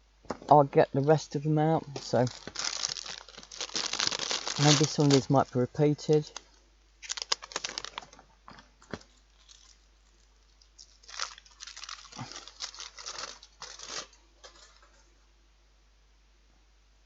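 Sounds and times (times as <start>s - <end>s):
wrappers crinkling and tearing: 1.8s - 15.0s.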